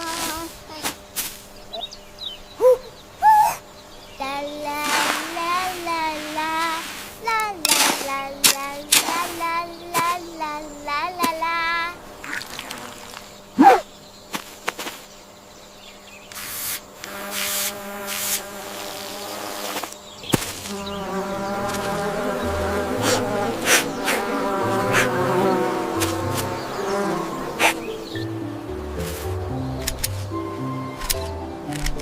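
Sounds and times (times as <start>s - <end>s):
buzzing insect: 0.0s - 2.4s, 4.2s - 32.0s
background music: 20.8s - 32.0s.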